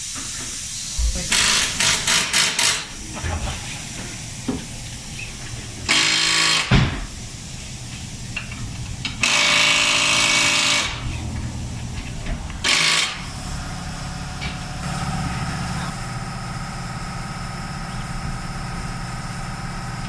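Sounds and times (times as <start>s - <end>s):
impact wrench rattling: 1.2s - 2.9s.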